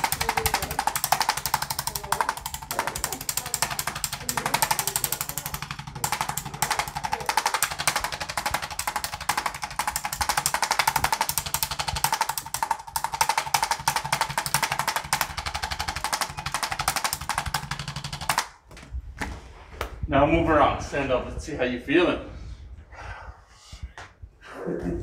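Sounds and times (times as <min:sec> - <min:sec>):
percussion massager buzzing: 0:00.0 - 0:18.9.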